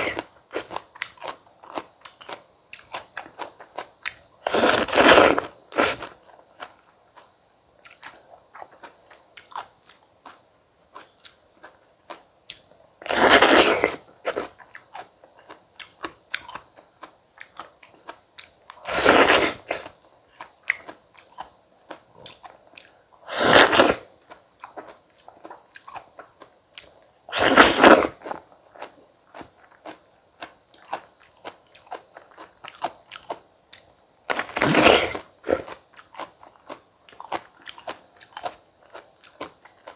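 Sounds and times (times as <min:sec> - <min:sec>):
crunching bites into fruit: 0:00.0 - 0:06.7, 0:11.0 - 0:16.7.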